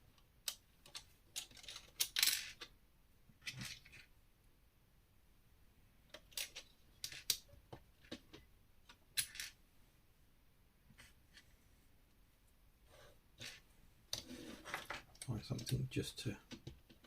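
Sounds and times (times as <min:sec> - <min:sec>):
plastic bricks clicking and rattling: 0:00.5 - 0:02.7, 0:06.1 - 0:09.6.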